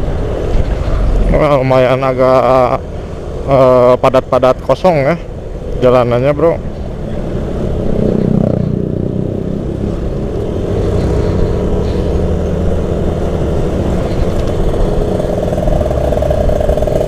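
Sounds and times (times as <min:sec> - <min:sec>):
motorcycle engine running: 0:07.2 - 0:17.0.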